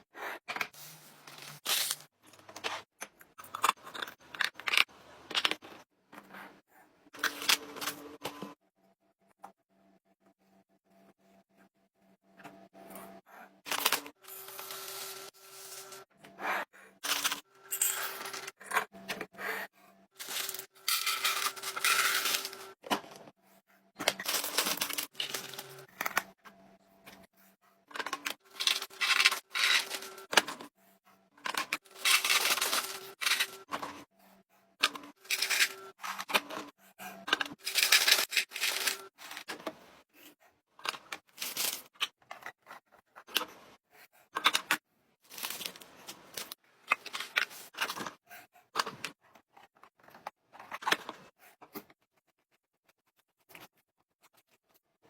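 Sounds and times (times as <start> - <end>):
plastic packaging crinkling: 20.2 - 22.8, 24.2 - 25.8, 28.5 - 30.3, 31.8 - 33.6, 35.2 - 35.8, 37.6 - 39.4
items being set down: 20.2 - 23.1, 31.4 - 33.7.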